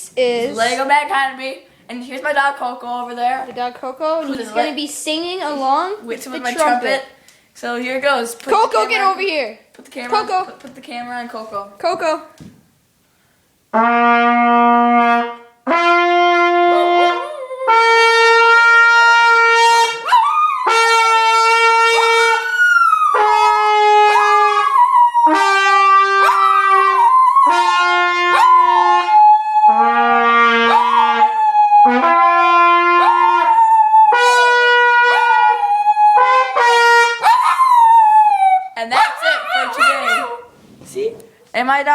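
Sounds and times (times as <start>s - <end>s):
trumpet playing long notes: 13.7s - 38.4s
dog howling: 16.7s - 18.3s, 20.0s - 21.0s, 22.0s - 23.2s, 24.0s - 32.1s, 32.8s - 36.3s, 37.2s - 40.5s.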